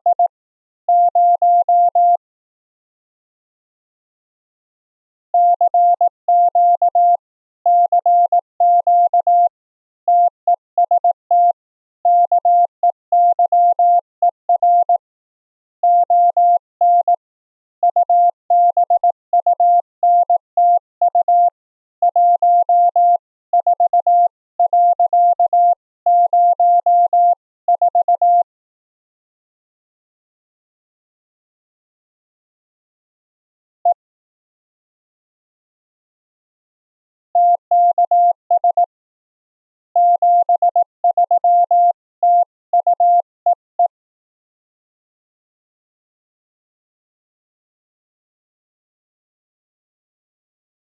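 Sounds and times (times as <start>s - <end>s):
morse code tone: 37.4s - 38.9s, 40.0s - 43.9s.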